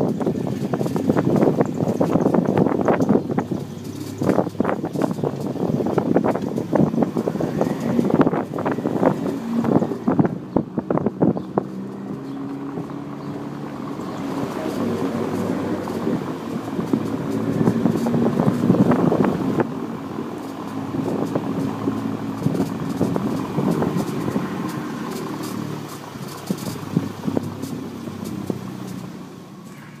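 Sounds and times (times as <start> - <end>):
car engine hum: 0.0 - 30.0
creaks and clicks from rear: 20.4 - 30.0.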